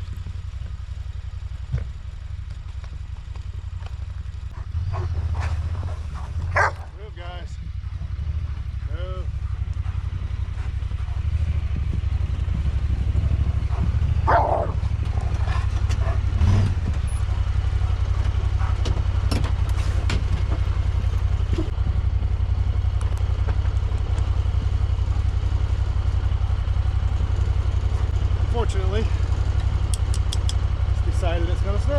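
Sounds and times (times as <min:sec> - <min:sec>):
vehicle engine idling: 0:00.0 - 0:31.9.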